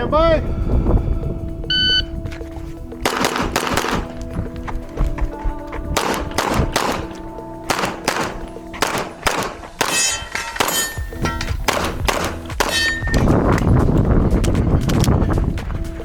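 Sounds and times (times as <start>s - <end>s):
background music: 0.0s - 16.0s
pistol shots: 3.0s - 4.2s, 6.0s - 13.2s
steel target ringing: 7.8s - 13.3s.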